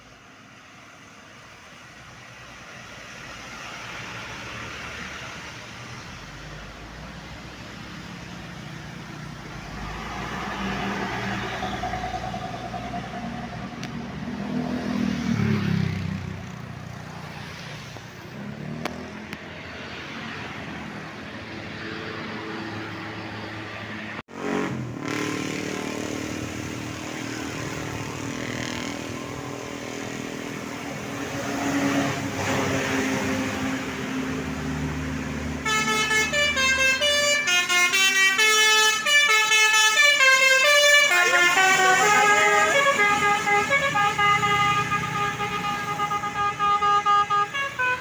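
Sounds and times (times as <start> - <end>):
steady traffic noise: 0.0 - 48.0
vehicle engine passing by: 7.9 - 21.1, 21.9 - 37.2.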